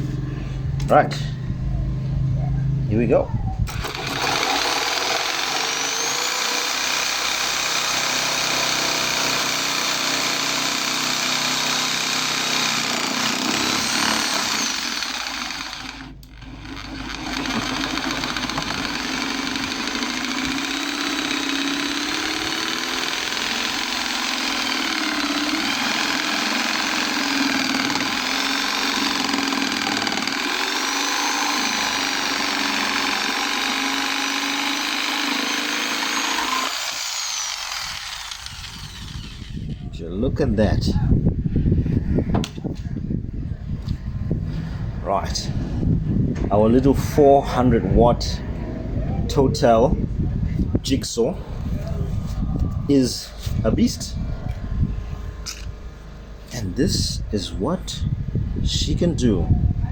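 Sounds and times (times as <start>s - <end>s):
electric jigsaw sawing wood: 3.7s - 39.9s.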